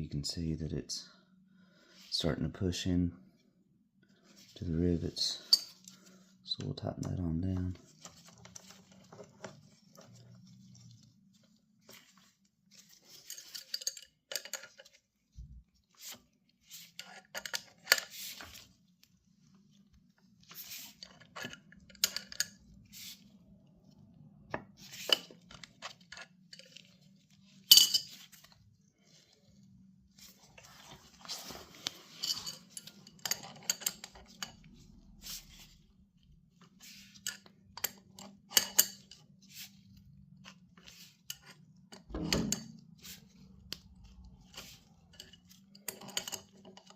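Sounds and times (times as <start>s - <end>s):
metal clicking and clinking: 13.1s - 15.0s.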